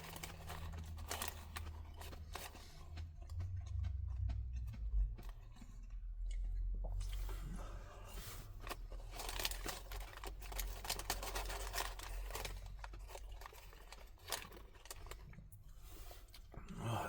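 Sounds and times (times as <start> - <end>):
paper packaging crinkling and tearing: 0.0 - 2.5, 8.5 - 15.4.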